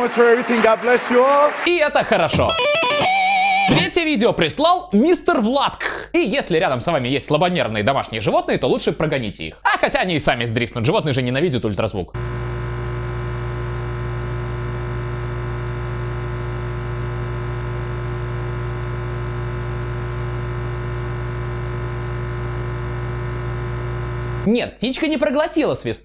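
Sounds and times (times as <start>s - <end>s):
hummingbird snoring whistle: 12.8s - 14.5s, 16.0s - 17.6s, 19.4s - 21.0s, 22.6s - 24.2s.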